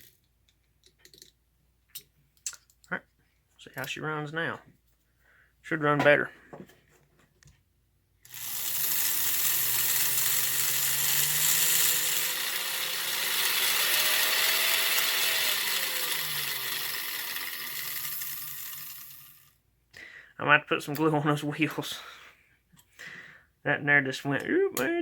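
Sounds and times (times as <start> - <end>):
toy train motor gear whir: 8.2 - 19.6.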